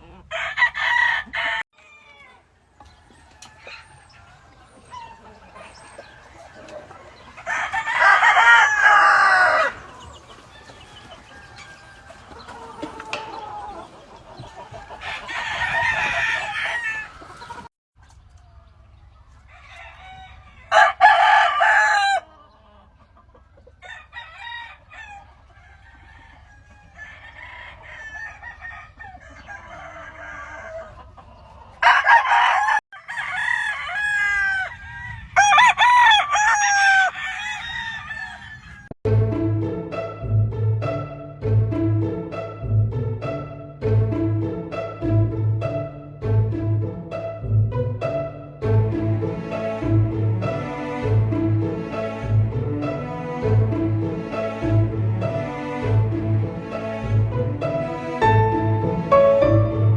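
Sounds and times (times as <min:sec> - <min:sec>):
roosters crowing: 0:00.0 - 0:17.7, 0:18.4 - 0:39.0
chickens clucking: 0:00.0 - 0:39.0.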